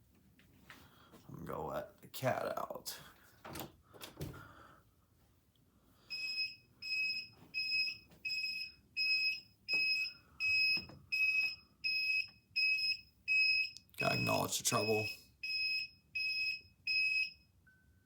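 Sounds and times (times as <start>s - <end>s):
high-pitched electronic beeping: 12.6s - 17.0s.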